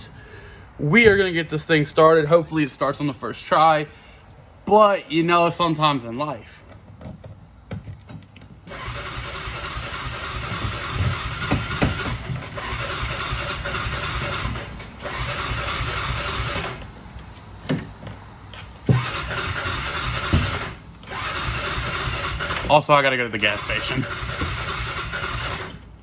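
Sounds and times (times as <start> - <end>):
engine cranking on starter: 8.6 - 17.0, 18.8 - 26.0.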